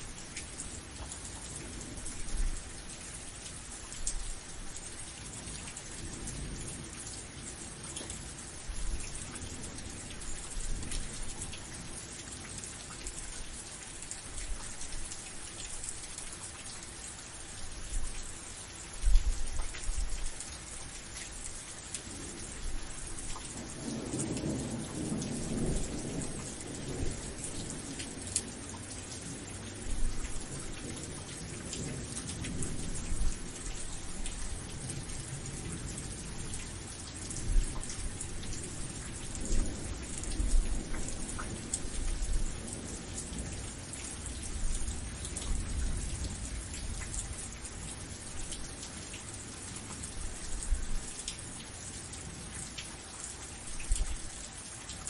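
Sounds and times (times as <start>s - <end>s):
steady rain falling: 0.0s - 55.0s
ticks of raindrops: 0.0s - 55.0s
thunder rumbling: 23.5s - 28.5s.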